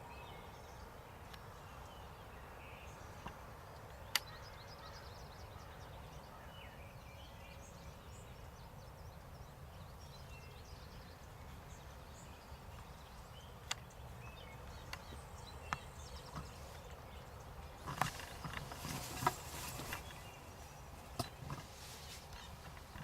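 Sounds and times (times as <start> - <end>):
faint songbird chorus: 0.0 - 23.0
sharp clicks: 13.6 - 13.9.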